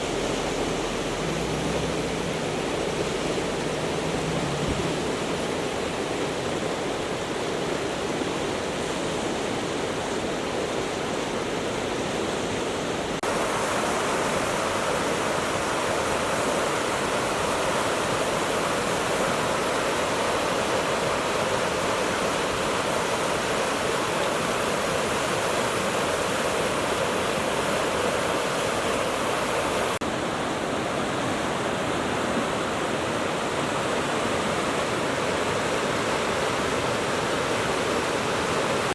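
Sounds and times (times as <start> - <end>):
river rushing over rocks: 0.0 - 38.9.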